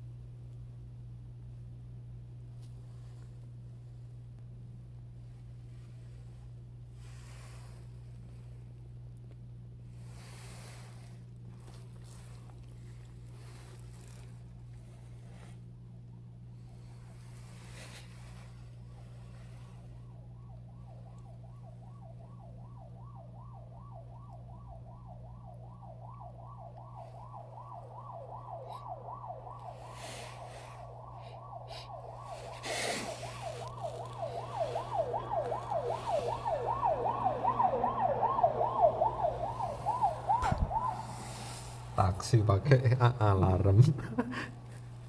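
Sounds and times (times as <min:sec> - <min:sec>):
siren on fast yelp: 0:20.0 - 0:44.2.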